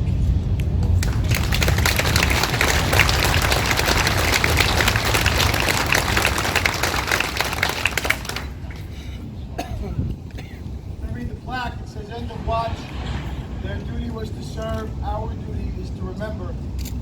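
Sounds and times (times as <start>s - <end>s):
crowd applauding: 1.0s - 9.0s.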